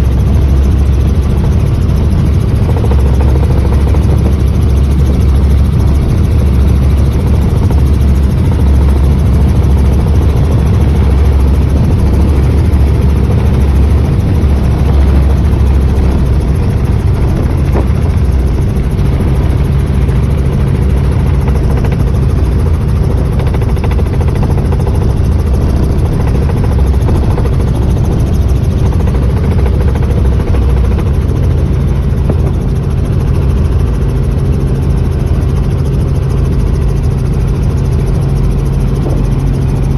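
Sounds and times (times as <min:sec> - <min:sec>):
helicopter rotor and engine: 0:00.0 - 0:39.9.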